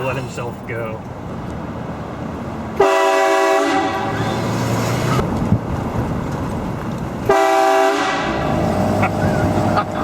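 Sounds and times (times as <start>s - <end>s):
train horn blast: 2.8s - 4.3s, 7.3s - 8.4s.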